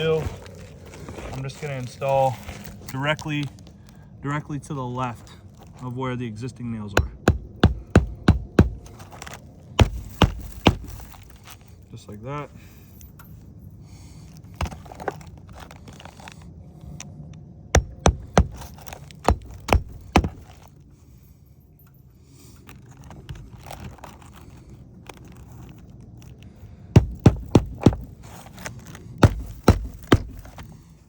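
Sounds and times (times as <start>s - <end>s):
hammer driving nails into shingle: 7.0s - 9.1s, 9.8s - 11.4s, 17.8s - 20.6s, 26.9s - 30.9s.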